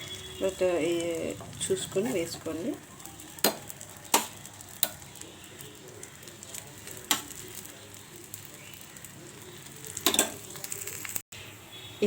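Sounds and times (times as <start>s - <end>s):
flatbread sizzling on griddle: 0.0s - 11.5s
utensil clicking against pan: 3.4s - 5.0s, 7.0s - 7.5s.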